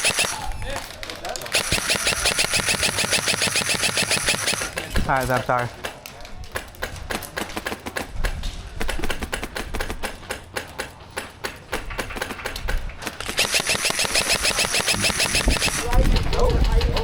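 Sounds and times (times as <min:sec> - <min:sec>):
airsoft gun firing: 0:00.0 - 0:00.8, 0:01.4 - 0:16.1.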